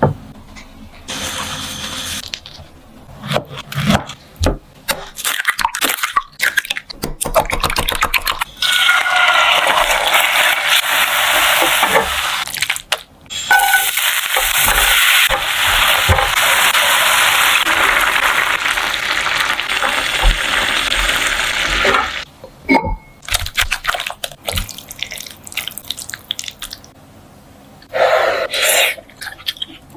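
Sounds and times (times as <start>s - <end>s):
food sizzling in hot oil: 8.6s - 12.5s, 13.3s - 22.2s.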